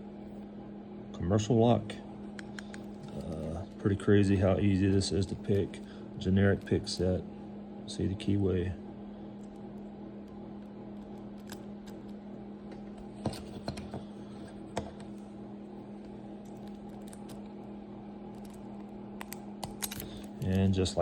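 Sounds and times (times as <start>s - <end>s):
steady low hum: 0.0s - 21.0s
lock pick clicking and scraping: 19.2s - 20.1s.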